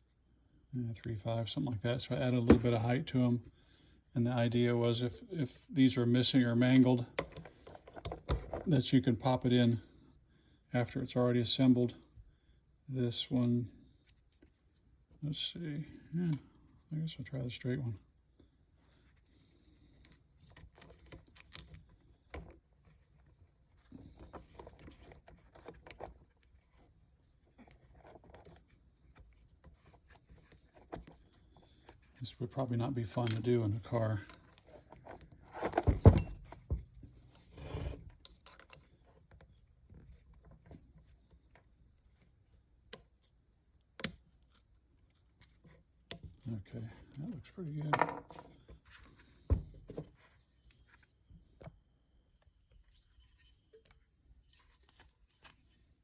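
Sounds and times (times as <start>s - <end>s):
plastic parts clicking and rubbing: 19.0s - 32.3s, 33.0s - 51.0s.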